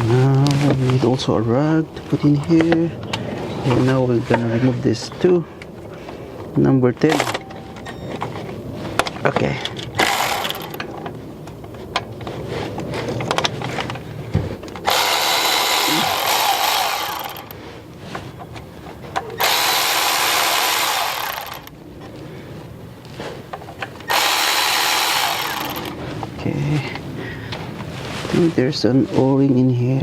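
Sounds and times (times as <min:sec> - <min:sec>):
power tool spinning bolt: 0:07.0 - 0:08.0, 0:09.9 - 0:11.0, 0:14.8 - 0:17.6, 0:19.4 - 0:21.7, 0:24.0 - 0:26.0.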